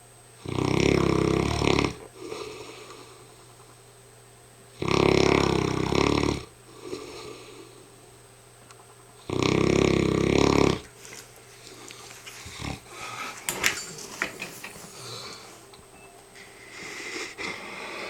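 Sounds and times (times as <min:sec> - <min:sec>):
dog snoring: 0:00.4 - 0:03.4, 0:04.7 - 0:07.9, 0:09.2 - 0:10.9, 0:11.7 - 0:13.9, 0:14.7 - 0:15.6, 0:16.6 - 0:18.0
breathy hiss: 0:00.5 - 0:03.8, 0:04.8 - 0:08.1, 0:09.2 - 0:18.0
dog breathing: 0:09.3 - 0:15.8, 0:16.4 - 0:18.0.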